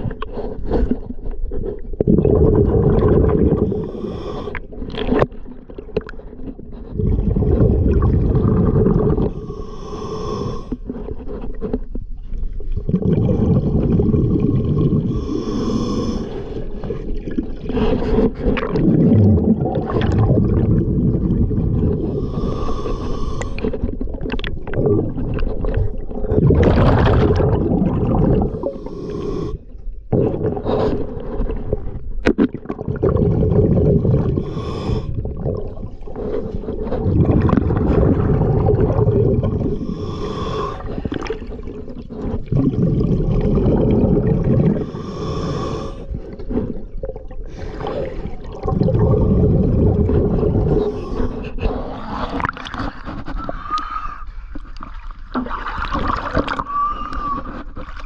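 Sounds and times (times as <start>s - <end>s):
exhale bubbling rumble: 0.0s - 58.0s
regulator inhale hiss: 3.7s - 4.7s, 9.3s - 10.8s, 15.1s - 16.6s, 22.0s - 23.8s, 28.6s - 29.7s, 34.4s - 35.2s, 39.7s - 41.1s, 44.8s - 46.2s, 50.8s - 51.5s.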